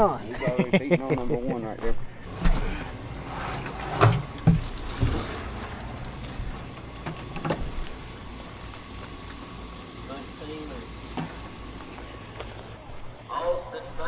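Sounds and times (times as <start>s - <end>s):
steady low rumble: 2.1s - 13.3s
knocks and thumps: 2.3s - 9.4s.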